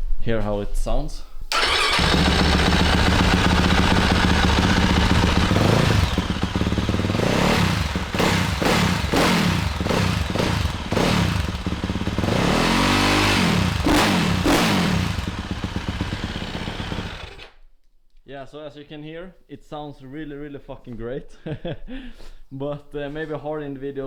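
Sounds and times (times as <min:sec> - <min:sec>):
motorcycle engine idling and revving: 0:01.5 - 0:17.6.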